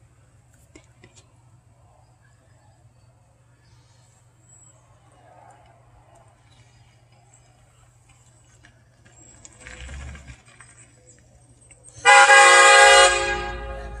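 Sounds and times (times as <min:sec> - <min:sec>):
air horn blast: 0:12.0 - 0:14.0.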